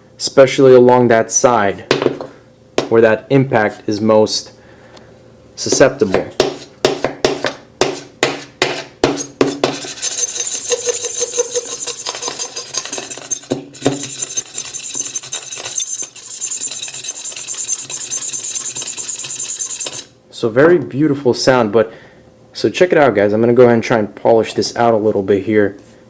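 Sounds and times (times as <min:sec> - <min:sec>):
knife scraping across metal: 0:09.2 - 0:20.2.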